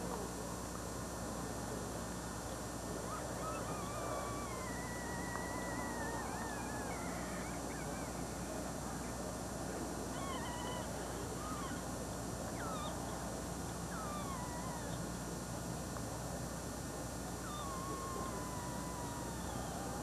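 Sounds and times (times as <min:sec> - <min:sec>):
steady low hum: 0:00.0 - 0:20.0
animal wavering gliding cries: 0:03.0 - 0:09.0, 0:10.1 - 0:15.2, 0:17.4 - 0:20.0.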